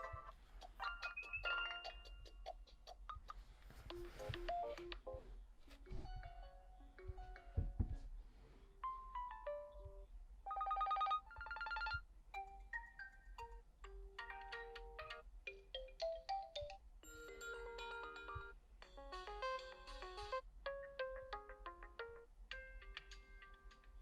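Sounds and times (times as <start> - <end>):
phone ringtone melodies: 8.8 - 20.0.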